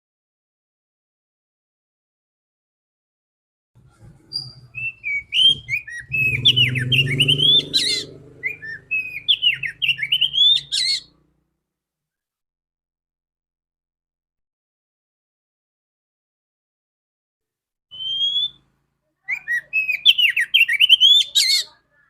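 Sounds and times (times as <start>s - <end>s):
low hum: 3.8s - 10.4s
bird whistling and chirping: 4.3s - 11.1s, 17.9s - 18.6s, 19.3s - 21.7s.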